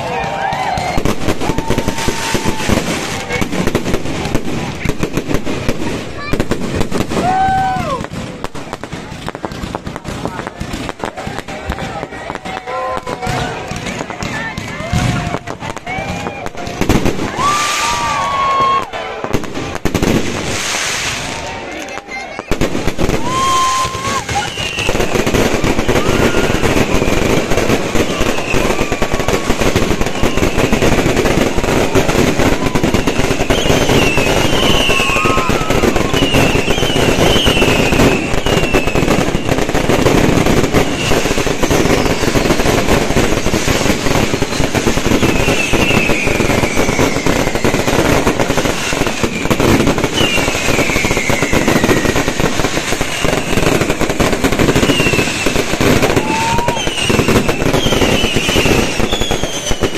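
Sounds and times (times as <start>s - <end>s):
fireworks bangs and crackling: 0.0s - 59.9s
whistling shells: 23.2s - 25.1s, 32.6s - 39.6s, 45.2s - 48.0s, 49.1s - 52.2s, 54.8s - 59.9s.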